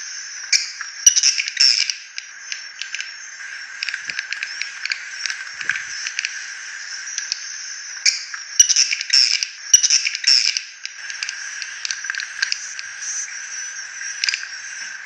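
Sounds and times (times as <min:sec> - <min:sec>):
sharp clicks: 0:00.8 - 0:03.1, 0:03.8 - 0:06.4.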